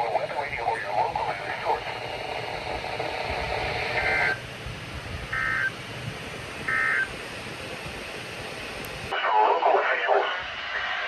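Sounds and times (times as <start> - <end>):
two-tone digital data bursts: 5.4 - 5.7, 6.7 - 7.1.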